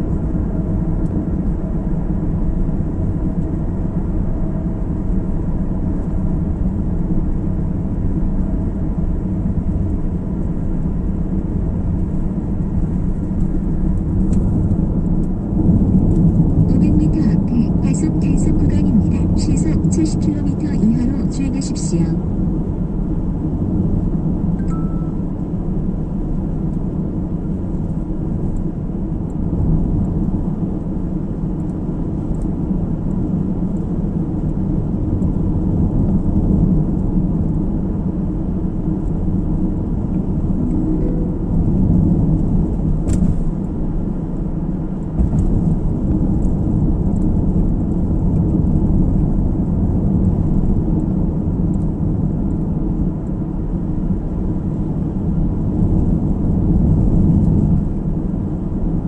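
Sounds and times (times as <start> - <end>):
car interior road rumble: 0.0 - 59.0.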